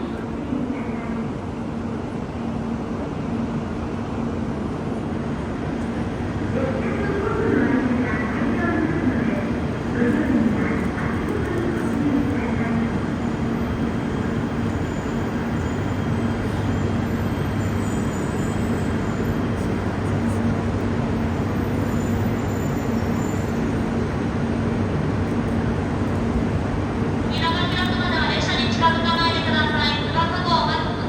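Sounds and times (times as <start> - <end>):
standing train humming: 0.0 - 31.0.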